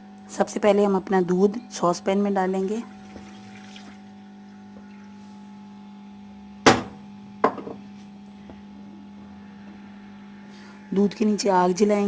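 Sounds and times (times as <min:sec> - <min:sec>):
steady low hum: 0:00.0 - 0:12.0
kitchenware knocking: 0:06.7 - 0:07.8.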